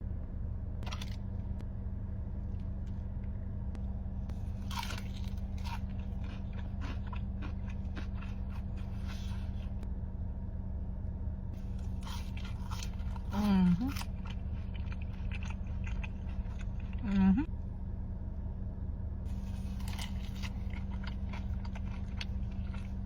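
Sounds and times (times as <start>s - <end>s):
steady low hum: 0.0s - 23.0s
crunchy bites of food: 4.3s - 9.5s, 11.7s - 17.0s, 19.3s - 23.0s
crunchy chewing: 4.3s - 9.8s, 11.6s - 17.2s, 19.3s - 23.0s.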